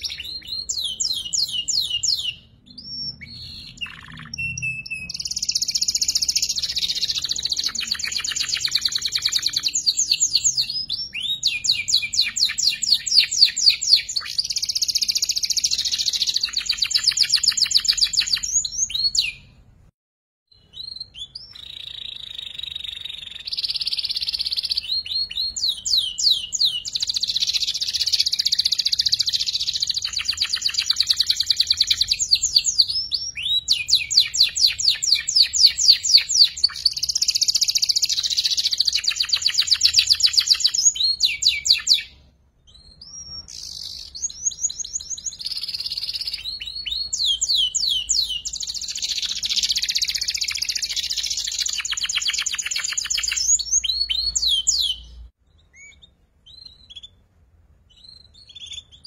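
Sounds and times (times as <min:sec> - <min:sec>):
canary singing trills: 0:00.0 - 0:19.6, 0:20.5 - 0:59.0.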